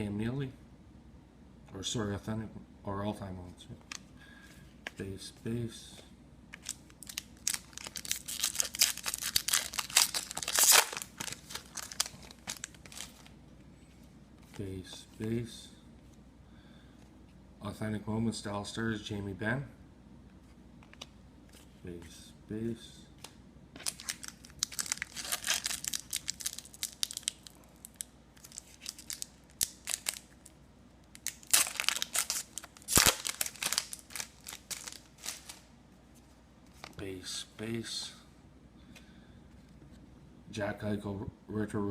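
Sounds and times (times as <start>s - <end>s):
card pack wrapper crinkling: 6.5s - 13.4s, 23.8s - 35.7s
cards being handled: 6.5s - 15.2s
wrapper ripping: 6.6s - 13.3s, 23.8s - 30.5s, 31.1s - 35.7s.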